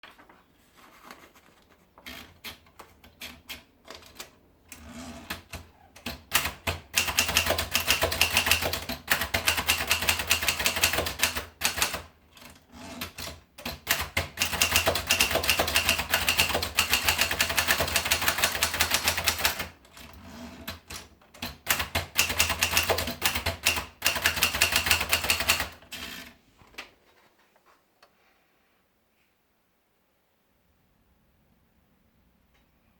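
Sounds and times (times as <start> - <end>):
typewriter keystrokes: 5.3 - 20.1, 20.7 - 26.2.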